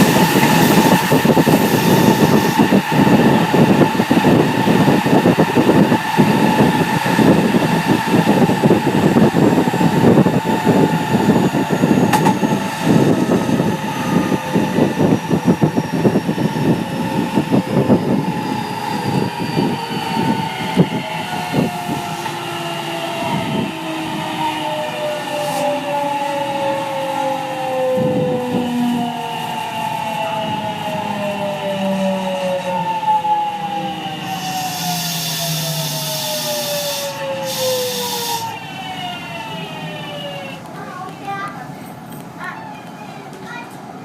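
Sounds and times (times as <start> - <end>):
rail rumble: 0.0 - 44.0
train wheel knocks: 12.0 - 12.4.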